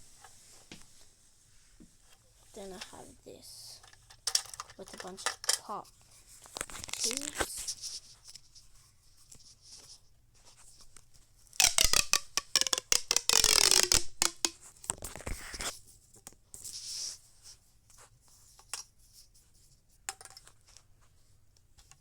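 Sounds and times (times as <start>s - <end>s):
plastic rustling: 6.4s - 7.9s
plastic tube rasping clicks: 6.5s - 7.5s, 11.6s - 15.7s.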